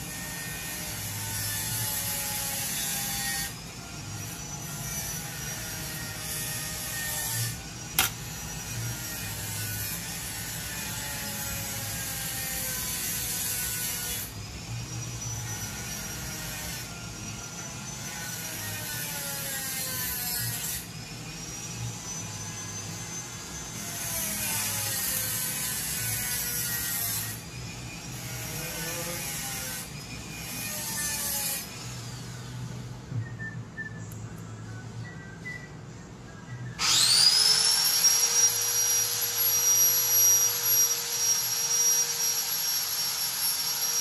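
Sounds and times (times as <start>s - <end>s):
small motor-driven tool whining: 0.0s - 32.9s, 36.8s - 44.0s
sharp click: 8.0s - 8.2s.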